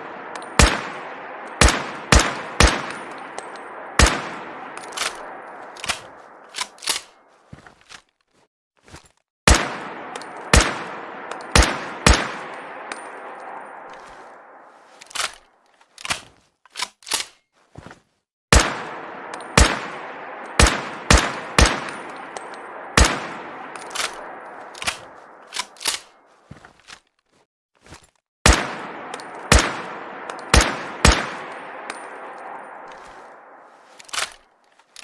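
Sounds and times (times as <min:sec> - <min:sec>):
rifle shots with echo: 0:00.0 - 0:07.2, 0:09.5 - 0:15.4, 0:18.5 - 0:26.2, 0:28.4 - 0:34.4.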